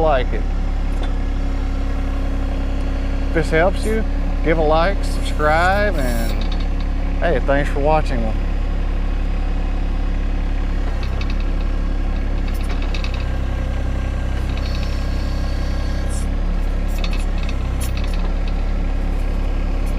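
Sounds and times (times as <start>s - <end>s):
tractor diesel engine idling: 0.0s - 19.9s
light clicks and rattles: 10.9s - 13.4s, 16.9s - 18.6s.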